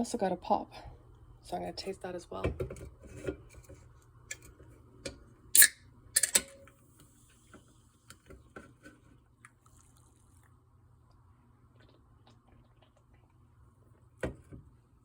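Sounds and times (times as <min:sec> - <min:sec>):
sipping liquid: 0:11.4 - 0:14.0.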